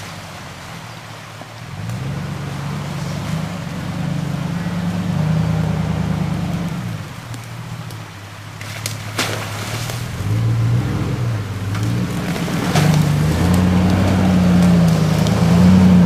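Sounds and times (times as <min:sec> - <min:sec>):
car engine revving: 0:01.7 - 0:07.8, 0:09.9 - 0:16.0.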